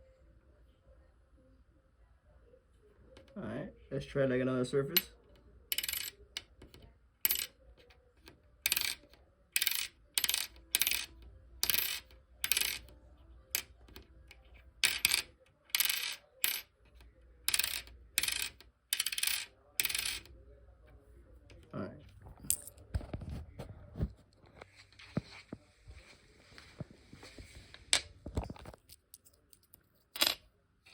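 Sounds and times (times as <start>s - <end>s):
coins pinging on hard surface: 4.9s - 20.4s, 22.4s - 23.0s, 30.1s - 30.4s.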